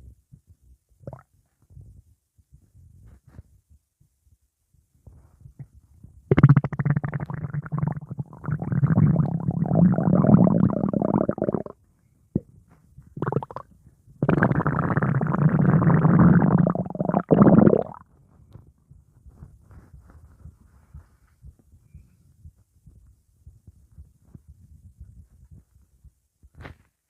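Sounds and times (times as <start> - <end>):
stomach growling gurgles: 1.1 - 1.3, 6.3 - 11.8, 13.2 - 18.1.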